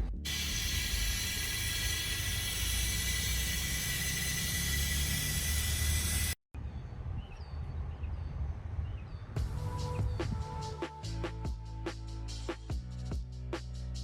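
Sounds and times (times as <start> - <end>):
loud hiss: 0.3 - 6.4
low rumble: 6.6 - 11.9.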